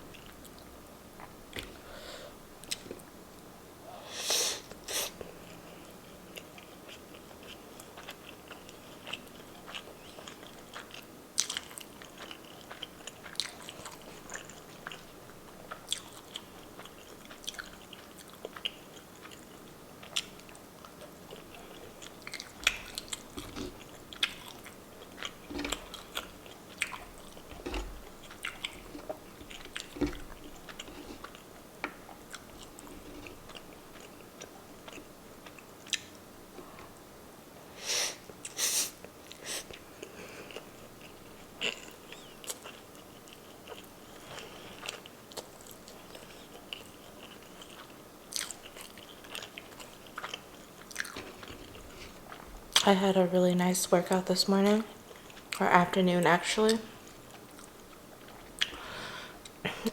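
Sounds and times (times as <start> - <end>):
person biting and chewing: 21.3 - 36.1.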